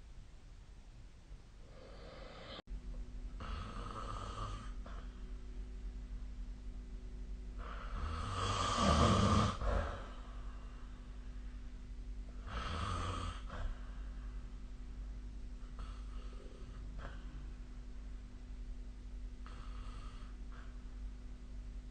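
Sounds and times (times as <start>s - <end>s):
steady low hum: 0.0s - 21.9s
person snoring: 1.6s - 2.6s, 3.4s - 5.2s, 7.6s - 10.7s, 12.4s - 14.0s, 15.6s - 17.4s, 19.4s - 20.8s.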